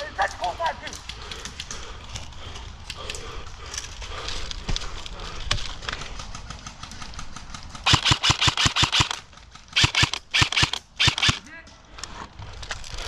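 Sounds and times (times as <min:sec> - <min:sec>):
airsoft rifle firing bursts: 0:06.2 - 0:11.5.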